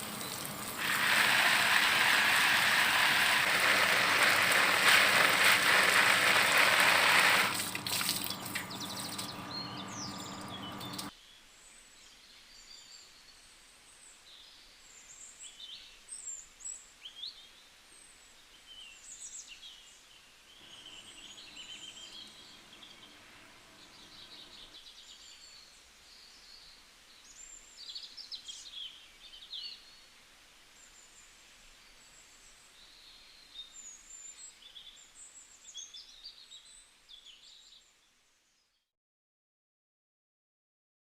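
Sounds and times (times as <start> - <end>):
small birds chirping: 0.0 - 1.3, 7.5 - 11.4, 18.6 - 30.0
faint background hiss: 7.7 - 38.8
steady low hum: 8.2 - 11.1.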